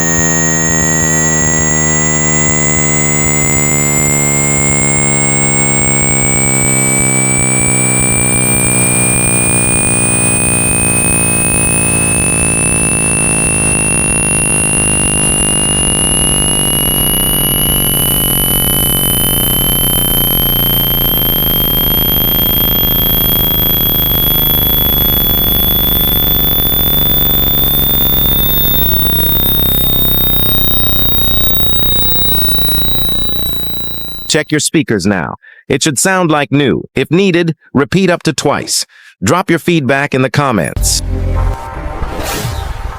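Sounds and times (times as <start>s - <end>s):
pure tone gliding upward: 0.0s - 34.5s
very high stepped tones: 0.0s - 34.6s, 40.8s - 41.8s
loud rumbling noise: 40.8s - 42.9s.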